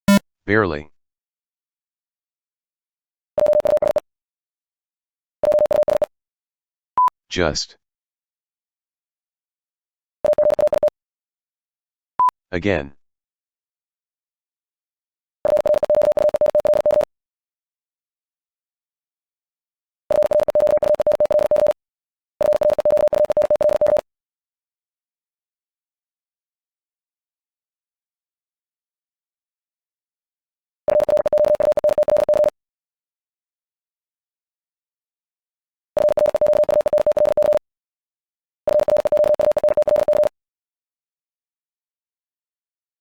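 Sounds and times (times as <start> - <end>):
morse code tone: 0.0 - 0.2, 5.4 - 6.1, 10.2 - 10.9, 15.5 - 17.1, 20.1 - 21.8, 22.4 - 24.0, 30.9 - 32.5, 36.0 - 37.6, 38.7 - 40.3.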